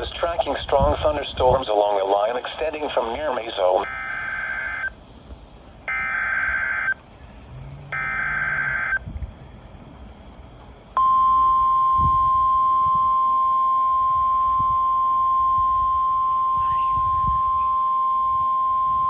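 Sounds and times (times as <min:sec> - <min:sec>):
steady loud alarm tone: 0:03.6 - 0:05.0, 0:05.9 - 0:07.0, 0:07.9 - 0:09.0, 0:11.0 - 0:19.0.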